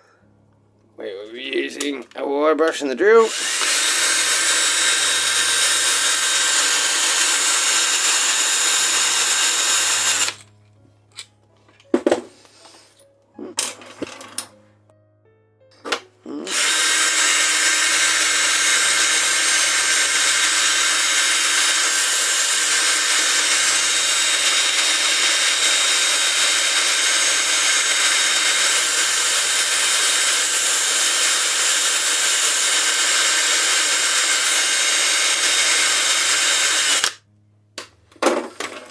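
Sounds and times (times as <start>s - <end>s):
cordless drill spinning wire brush: 3.3s - 10.5s, 16.5s - 37.2s.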